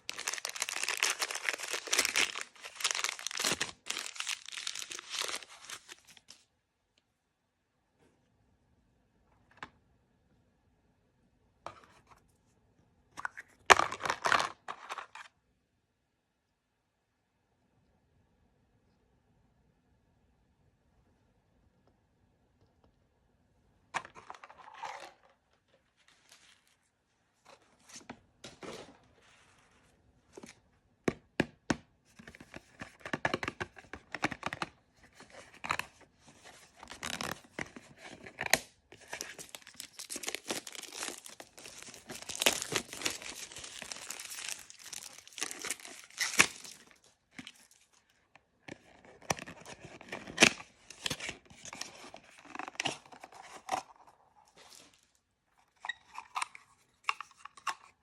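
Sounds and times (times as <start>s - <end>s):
packaging tearing and crinkling: 0.0s - 6.4s, 36.8s - 47.9s.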